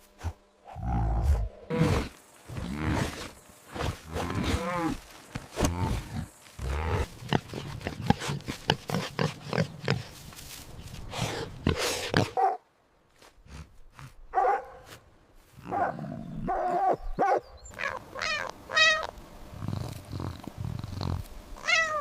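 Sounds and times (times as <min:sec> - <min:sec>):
pigs grunting and squealing: 0:05.6 - 0:10.1.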